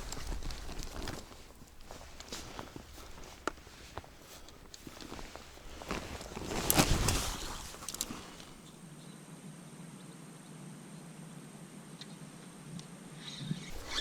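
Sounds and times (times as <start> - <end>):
fishing gear rustling and clicking: 0.0 - 8.8, 13.7 - 14.0.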